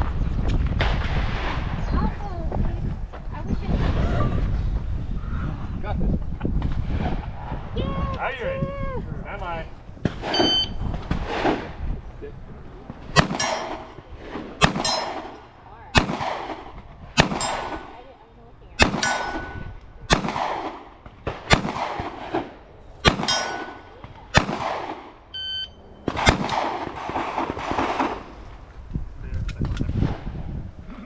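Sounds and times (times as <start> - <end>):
electronic timer beep: 10.3 - 10.8, 25.3 - 25.8
handgun shots with echo: 13.2 - 14.0, 14.6 - 15.4, 16.0 - 16.6, 17.2 - 18.0, 18.8 - 20.8, 21.5 - 25.2, 26.0 - 28.3.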